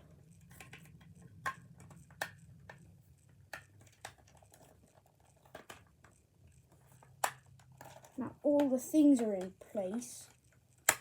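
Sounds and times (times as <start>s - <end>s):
plastic parts clicking: 3.4s - 9.5s, 10.3s - 11.0s.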